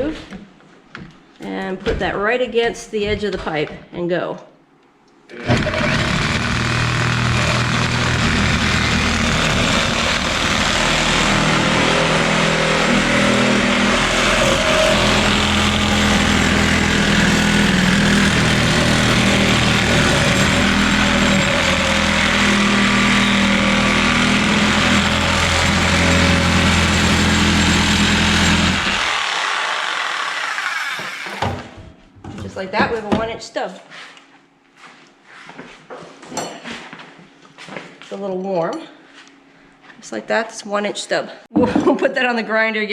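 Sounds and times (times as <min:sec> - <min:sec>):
reciprocating saw cutting metal pipe: 0:05.4 - 0:31.4.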